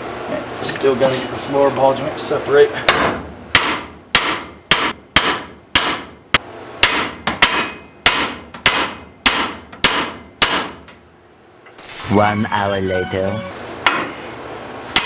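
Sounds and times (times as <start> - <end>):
hammer striking steel: 1.0 - 1.6, 2.9 - 6.2, 6.8 - 10.9, 13.8 - 14.2.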